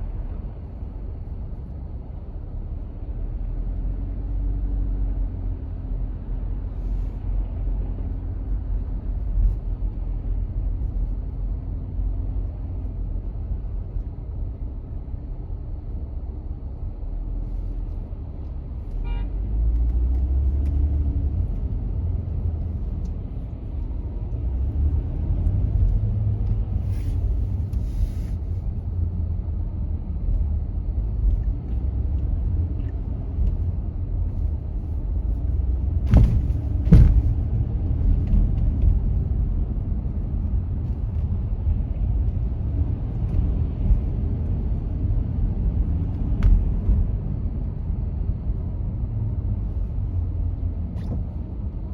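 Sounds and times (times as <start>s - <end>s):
road and engine rumble: 0.0s - 51.9s
short tone: 19.0s - 19.3s.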